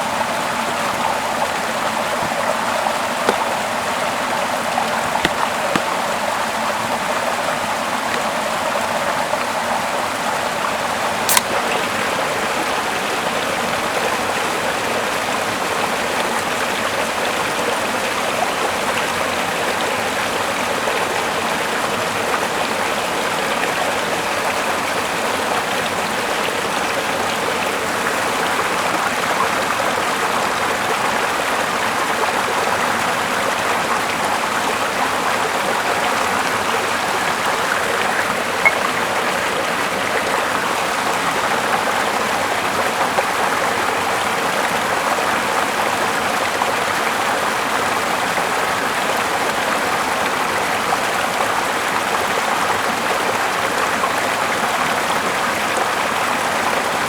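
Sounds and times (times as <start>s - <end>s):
flowing water rushing: 0.0s - 57.0s
faint click: 11.3s - 11.6s, 37.8s - 39.0s.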